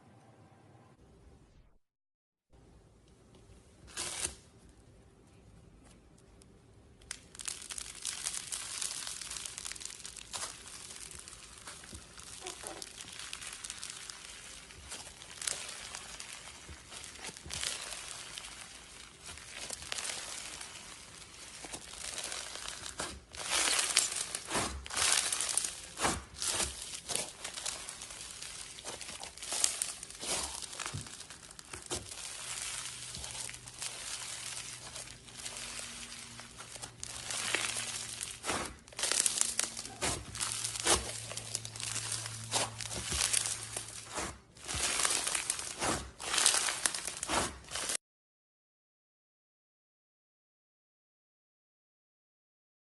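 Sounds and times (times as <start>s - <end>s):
crunchy slime crackling: 6.2s - 48.0s.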